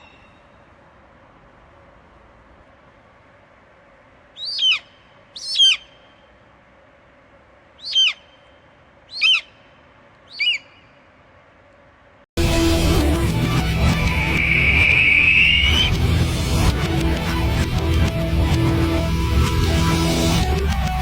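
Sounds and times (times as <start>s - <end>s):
bird calling: 0.0s - 0.8s, 4.3s - 6.4s, 7.7s - 11.2s, 13.9s - 16.1s.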